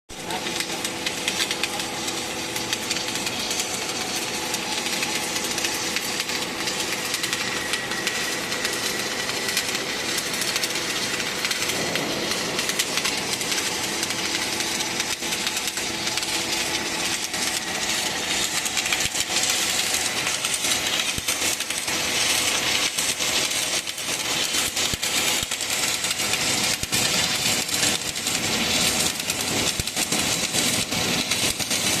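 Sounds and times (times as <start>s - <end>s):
welding crackling hiss: 0.1s - 32.0s
machine hum: 0.2s - 24.4s.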